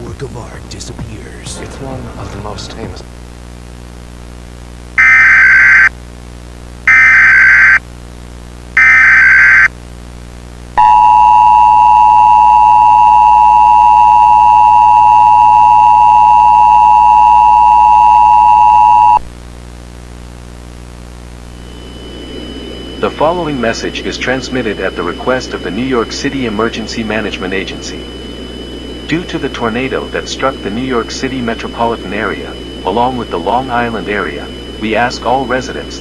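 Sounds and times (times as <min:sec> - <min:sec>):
warbling digital data bursts: 0:06.9 - 0:07.8, 0:08.8 - 0:09.7, 0:21.5 - 0:36.0
two-tone attention signal: 0:10.8 - 0:19.2.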